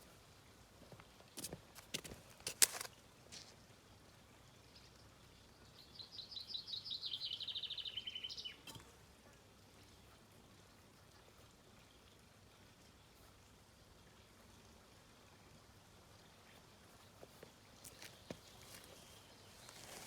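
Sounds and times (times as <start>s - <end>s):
songbird trilling: 6.0s - 8.6s.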